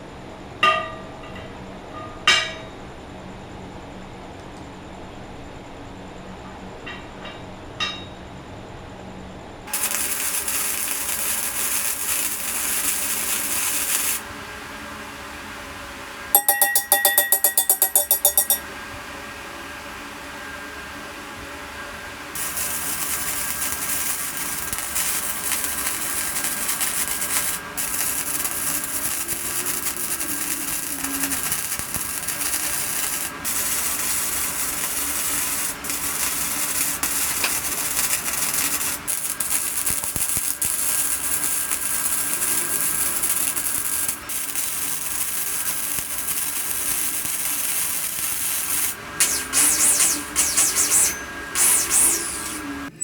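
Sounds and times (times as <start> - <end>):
power grinder abrading metal: 9.7 - 14.2, 22.4 - 53.0.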